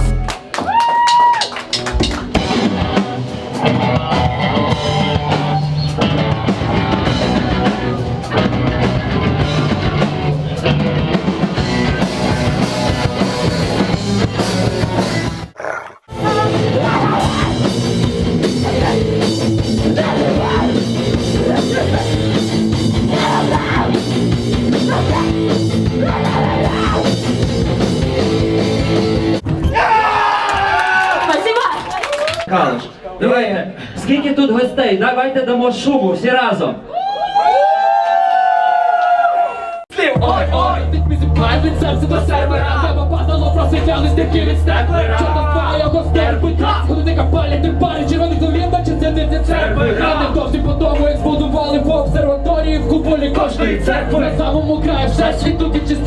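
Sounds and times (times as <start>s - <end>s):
rock band playing loud: 1.5s - 29.4s.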